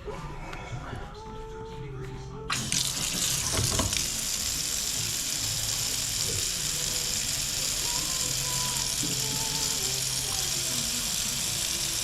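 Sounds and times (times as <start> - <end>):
water running into sink: 2.5 - 12.0.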